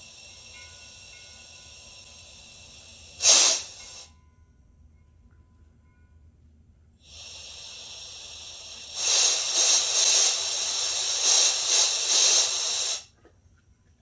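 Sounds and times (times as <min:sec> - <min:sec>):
air hissing from regulator: 0:00.0 - 0:04.1, 0:07.0 - 0:13.1.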